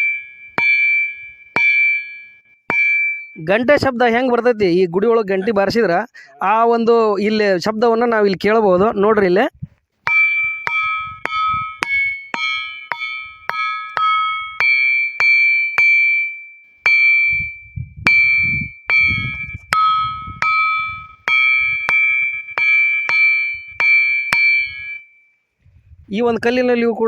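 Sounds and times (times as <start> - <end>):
stone striking ringing rock: 0.0 - 3.9, 10.0 - 25.3.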